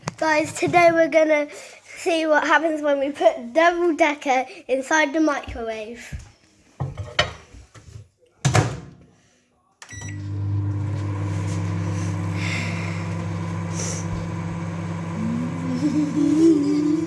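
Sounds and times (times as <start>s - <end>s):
microwave oven humming: 9.9s - 17.0s.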